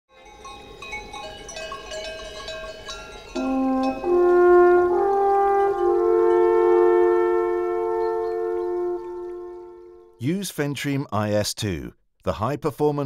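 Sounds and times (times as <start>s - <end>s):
light melody of short notes: 3.3s - 10.2s
brass-like chords: 3.4s - 10.2s.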